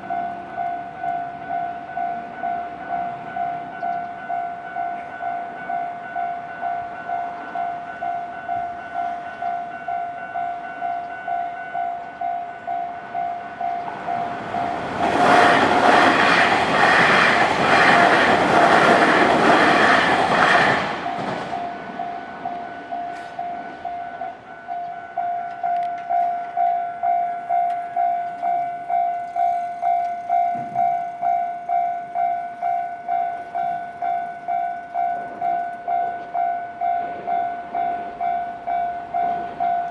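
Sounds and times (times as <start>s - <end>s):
level-crossing bell clanging: 0.0s - 39.9s
train rumbling past: 0.0s - 39.9s
wheels clattering over rail joints: 13.8s - 22.0s.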